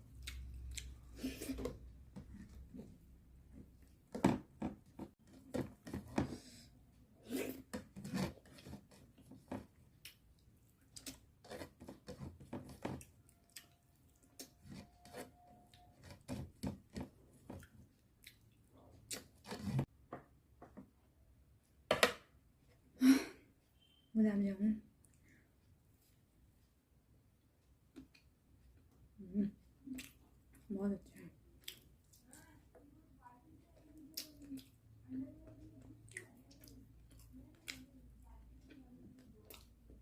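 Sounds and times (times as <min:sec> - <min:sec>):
chewing with wet mouth clicks: 0:00.1 - 0:01.1, 0:12.9 - 0:14.6, 0:17.6 - 0:19.4, 0:29.7 - 0:30.7, 0:31.6 - 0:32.6, 0:33.8 - 0:40.0.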